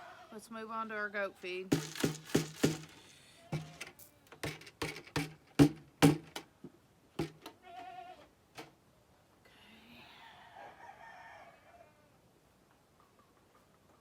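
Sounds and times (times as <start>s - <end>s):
sharp hollow knocks: 1.7s - 6.5s, 7.2s - 7.5s.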